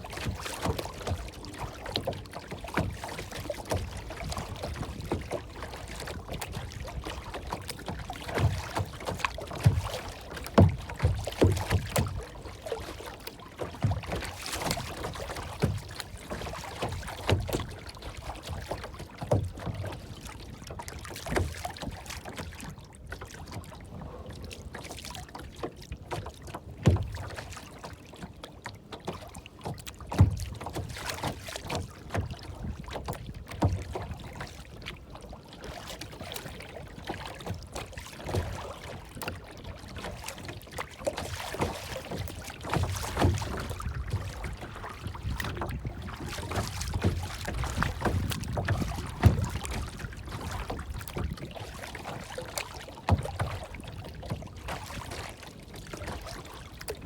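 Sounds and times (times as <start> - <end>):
water lapping and splashing: 0.0 - 57.0
soft knocks and low thumps: 42.8 - 51.4.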